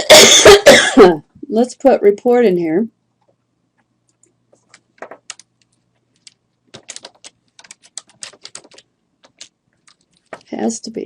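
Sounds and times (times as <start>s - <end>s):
typing on computer keyboard: 4.1s - 10.5s.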